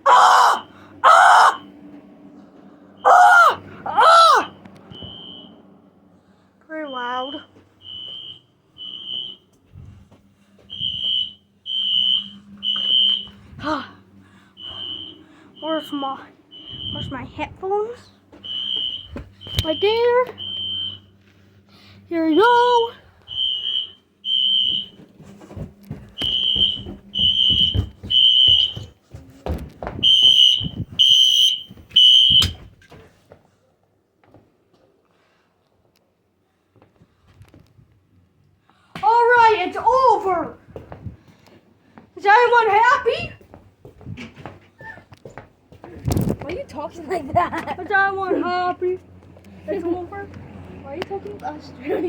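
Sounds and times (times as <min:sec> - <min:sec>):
fire alarm horn beeps: 0:04.9 - 0:05.6, 0:06.8 - 0:09.6, 0:10.7 - 0:13.4, 0:14.6 - 0:17.3, 0:18.4 - 0:21.2, 0:23.3 - 0:25.0, 0:26.2 - 0:28.9, 0:30.0 - 0:32.7.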